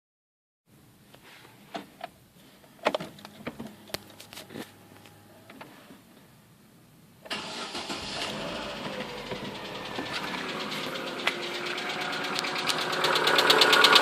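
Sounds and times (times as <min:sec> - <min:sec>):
clicks and clunks: 0:02.8 - 0:05.8
car engine starting and running: 0:07.3 - 0:14.0.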